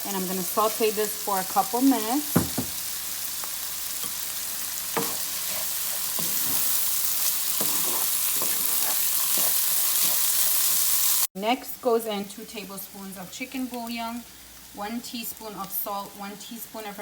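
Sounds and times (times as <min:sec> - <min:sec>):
rice sizzling in a skillet: 0:00.0 - 0:11.3
utensil scraping a pan: 0:05.0 - 0:10.9.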